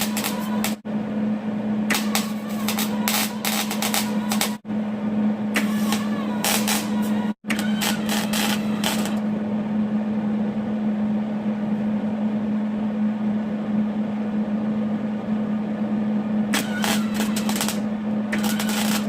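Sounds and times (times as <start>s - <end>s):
small power tool motor running: 16.6s - 19.0s.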